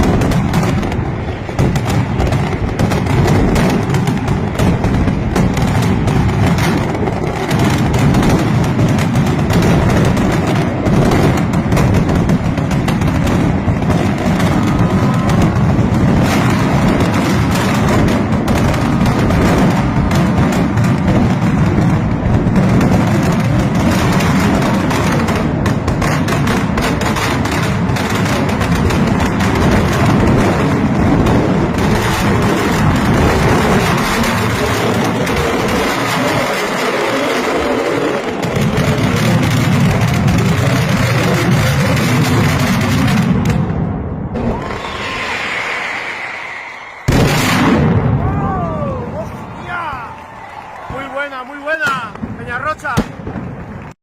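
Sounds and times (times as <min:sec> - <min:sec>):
firecrackers banging: 0:00.0 - 0:54.0.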